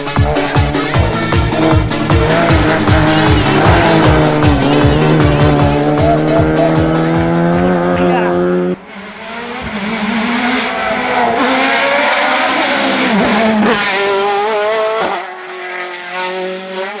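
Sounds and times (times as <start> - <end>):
race car engine high revs: 0.0 - 17.0.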